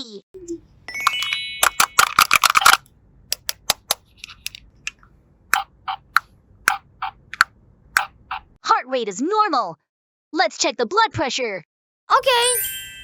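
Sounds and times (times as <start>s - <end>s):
plastic toy pieces clicking: 1.0s - 4.5s.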